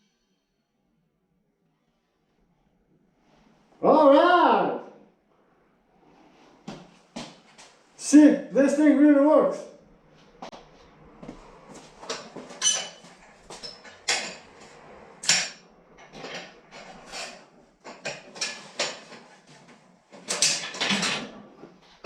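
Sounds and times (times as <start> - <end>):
metallic clanks and knocks: 12.0 - 21.4.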